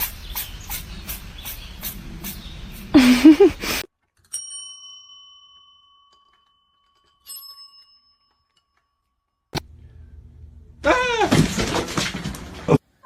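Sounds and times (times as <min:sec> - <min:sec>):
small bell dinging: 0:04.3 - 0:09.4.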